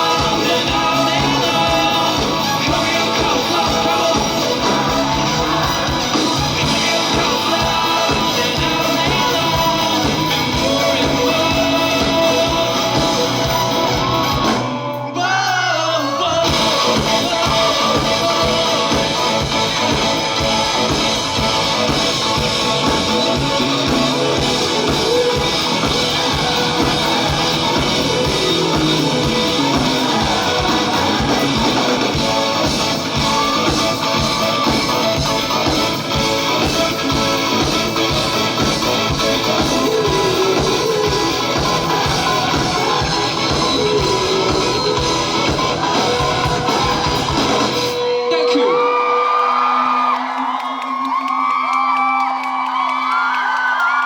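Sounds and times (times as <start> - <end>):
steady drum beat: 0.0 - 14.8, 16.4 - 48.1
live rock band playing: 0.0 - 49.6
person singing: 0.0 - 51.6.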